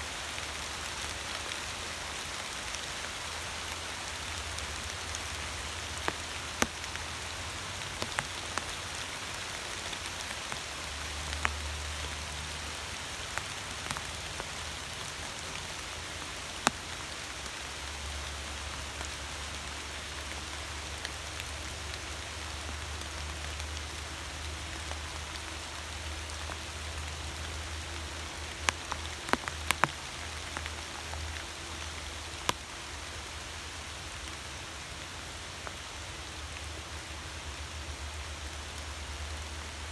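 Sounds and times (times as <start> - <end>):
steady rain hiss: 0.0 - 39.9
raindrop ticks: 0.3 - 33.3.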